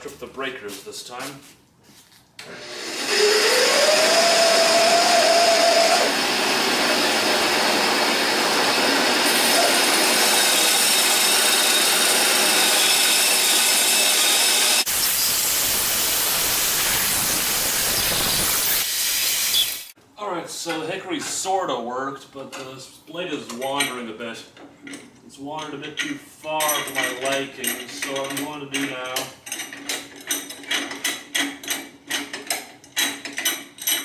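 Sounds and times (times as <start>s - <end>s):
bandsaw motor whine: 2.4s - 19.9s
bandsaw blade cutting wood: 2.4s - 20.0s.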